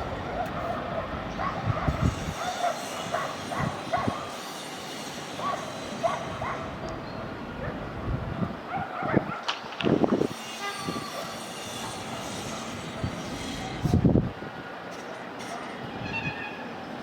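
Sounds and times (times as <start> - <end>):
distant traffic rumble: 0.0 - 4.2.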